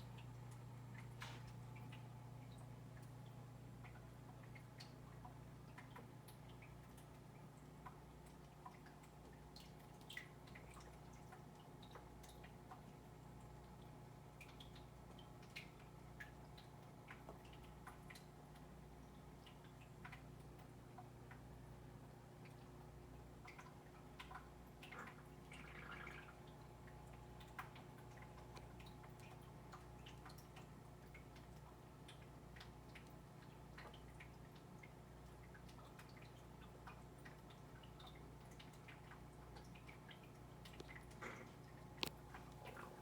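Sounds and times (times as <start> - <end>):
low steady hum: 0.0 - 43.0.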